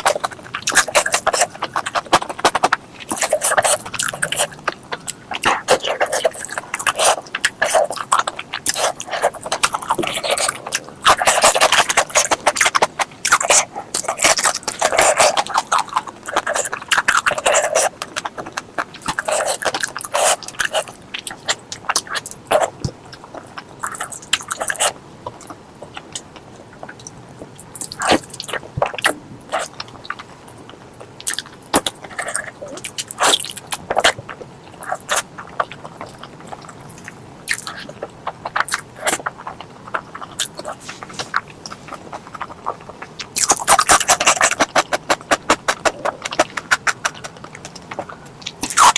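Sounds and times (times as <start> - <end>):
wet chewing and mouth smacks: 0.0 - 48.9.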